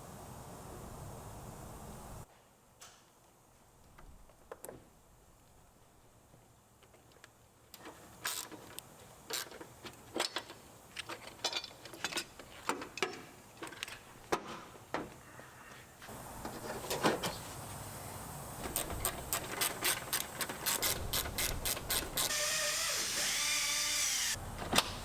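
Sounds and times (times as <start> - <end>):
hand tools clicking and knocking: 7.8 - 15.2, 18.6 - 22.4.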